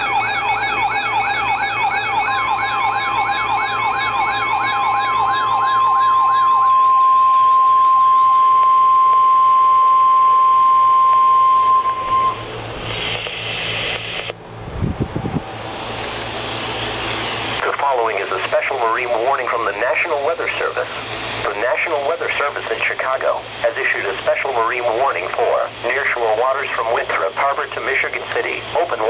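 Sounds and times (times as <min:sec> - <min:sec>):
siren-like alert in rising sweeps: 0:00.0 - 0:12.6
loud steady warning tone: 0:00.0 - 0:14.7, 0:15.4 - 0:29.0.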